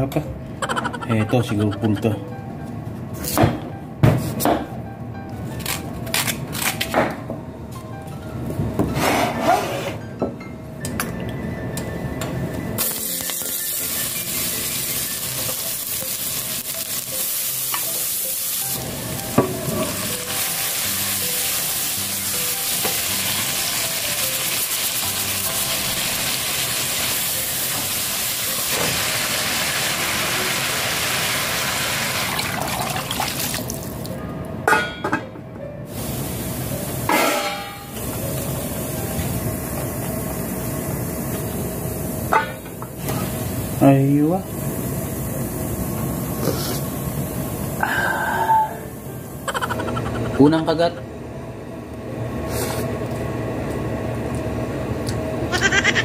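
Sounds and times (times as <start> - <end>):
food sizzling in a pan: 12.8 - 33.9.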